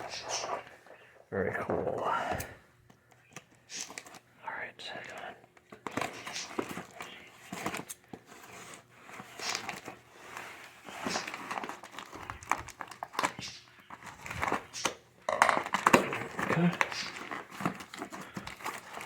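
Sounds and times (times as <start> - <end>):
packaging crinkling and tearing: 3.2 - 4.3, 5.6 - 19.0.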